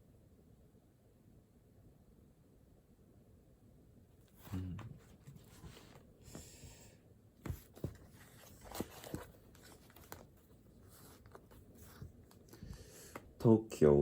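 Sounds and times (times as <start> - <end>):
pen and paper rustle: 7.4 - 13.3.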